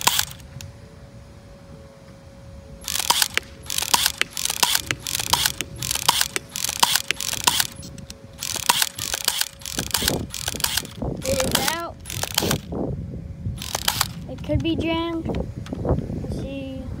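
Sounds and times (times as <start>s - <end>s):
airsoft pistol firing: 0.0s - 0.4s, 2.8s - 12.6s.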